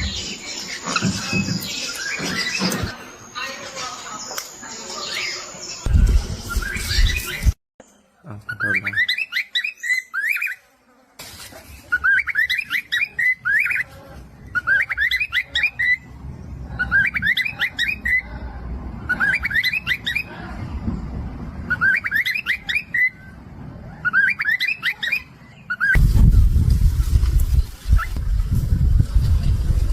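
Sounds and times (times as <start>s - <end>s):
parrot chirping: 11.9s - 13.9s, 14.5s - 18.3s, 19.0s - 20.3s, 21.7s - 26.0s.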